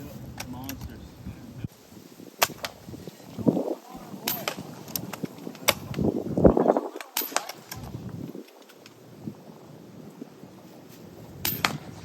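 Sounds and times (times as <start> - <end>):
air rifle shots: 2.4 - 2.8, 11.4 - 12.0.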